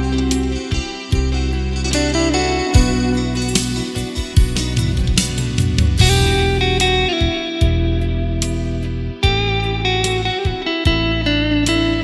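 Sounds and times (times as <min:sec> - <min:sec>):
guitar music: 0:00.0 - 0:12.0
sustained bass line: 0:01.2 - 0:10.2.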